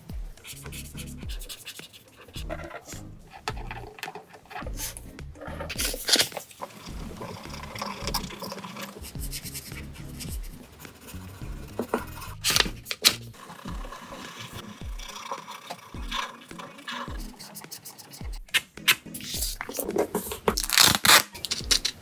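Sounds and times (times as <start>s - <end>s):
paper crinkling: 5.7s - 9.2s, 11.8s - 13.4s, 19.2s - 22.0s
paper rustling: 5.7s - 9.6s, 11.7s - 14.6s, 15.2s - 22.0s.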